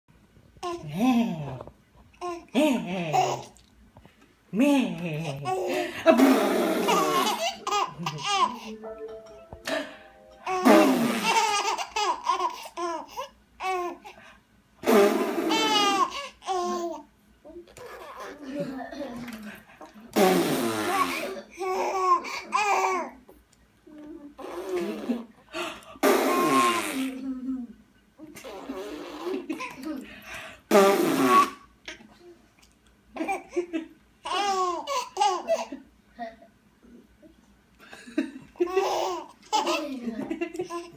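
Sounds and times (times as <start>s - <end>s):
baby laughing: 5.4s - 8.8s, 10.4s - 14.1s, 15.3s - 17.0s, 17.7s - 19.1s, 33.2s - 35.8s, 38.6s - 40.9s
mouth-fart noises: 6.2s - 7.3s, 10.6s - 11.4s, 14.8s - 15.5s, 20.2s - 21.4s, 26.0s - 27.2s, 30.7s - 31.6s.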